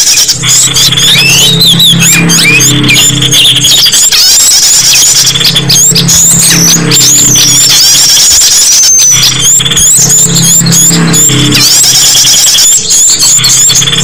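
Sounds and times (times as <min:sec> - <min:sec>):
songbirds chirping and trilling: 0:00.0 - 0:14.0
low hum: 0:00.3 - 0:07.9.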